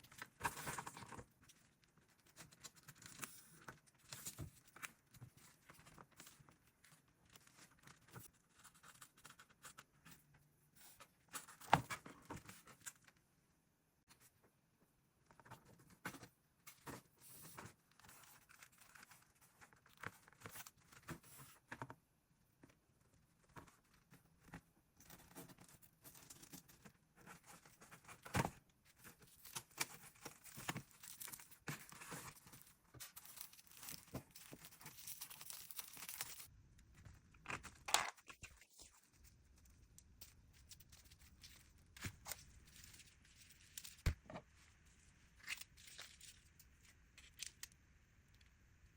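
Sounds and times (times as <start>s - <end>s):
dry material tearing and crinkling: 29.2s - 36.5s.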